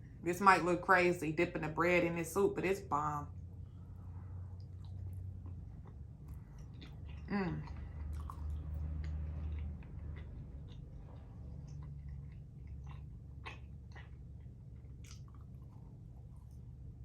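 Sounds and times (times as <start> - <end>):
steady low hum: 0.0 - 17.0
person chewing wet mouth sounds: 4.5 - 16.7
person humming: 7.3 - 7.6.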